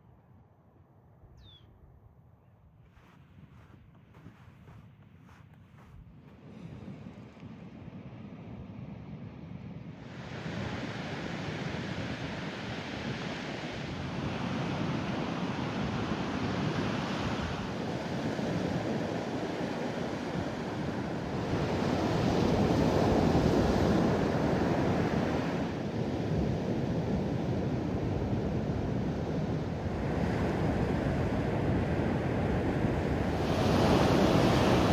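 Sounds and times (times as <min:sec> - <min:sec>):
wind on microphone: 0:20.8 - 0:34.9
ocean surf breaking: 0:33.1 - 0:34.9.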